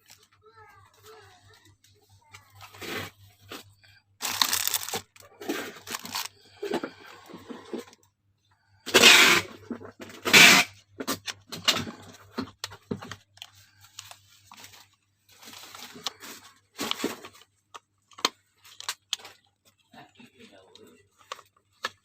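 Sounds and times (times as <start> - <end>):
rustling and clicking packaging: 0.0 - 8.1, 8.9 - 22.0
packaging ripping: 4.2 - 6.4.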